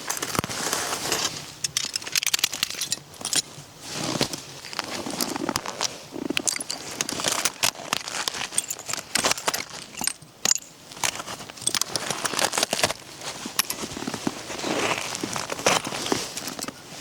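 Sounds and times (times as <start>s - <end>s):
crackling and clicking of handling: 0.0s - 16.8s.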